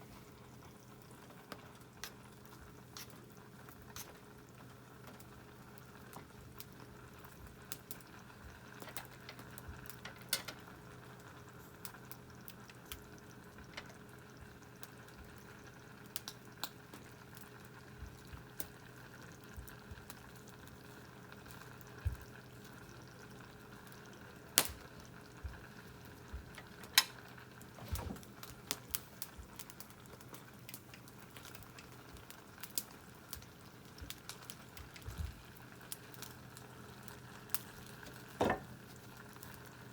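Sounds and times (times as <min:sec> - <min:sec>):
food bubbling and sizzling in tin: 0:00.0 - 0:39.9
wood fire pops and crackles: 0:00.0 - 0:39.9.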